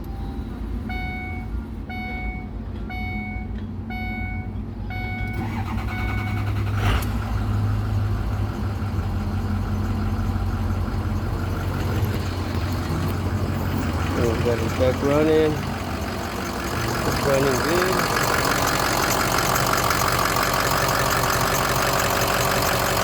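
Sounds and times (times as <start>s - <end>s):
dashboard warning chime beeping: 0.0s - 6.6s, 13.4s - 20.5s
diesel engine cranking and starting: 0.0s - 23.0s.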